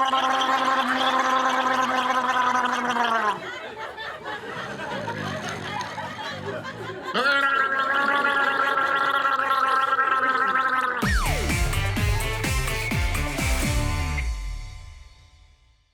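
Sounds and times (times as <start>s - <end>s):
person snoring loudly: 0.0s - 3.4s
music with drums: 11.0s - 15.7s.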